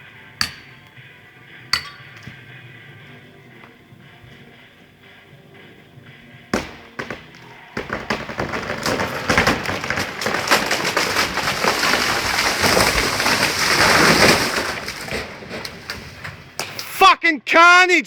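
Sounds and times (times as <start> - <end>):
branches snapping and crashing: 6.6 - 16.9
tree trunk cracking: 6.6 - 16.9.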